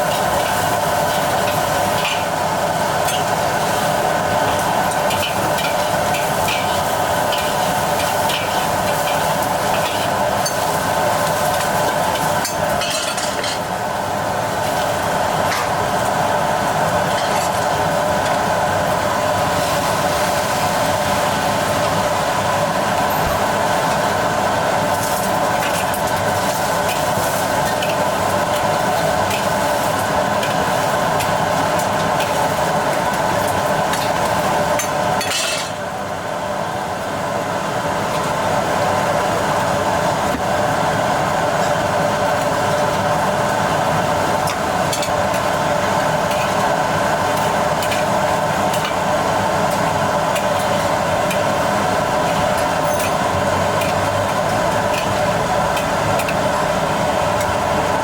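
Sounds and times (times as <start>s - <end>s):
utensils clinking against pots: 0.0s - 2.3s, 4.5s - 13.7s, 25.0s - 35.8s, 47.3s - 56.6s
steady kitchen roar: 0.0s - 58.0s.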